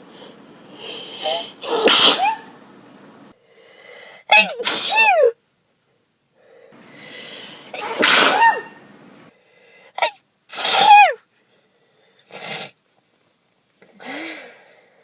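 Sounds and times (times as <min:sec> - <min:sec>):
person sneezing: 0:01.1 - 0:02.5, 0:04.3 - 0:05.2, 0:07.7 - 0:08.8, 0:10.0 - 0:11.2
drawn-in breath: 0:03.4 - 0:04.2, 0:06.4 - 0:07.7.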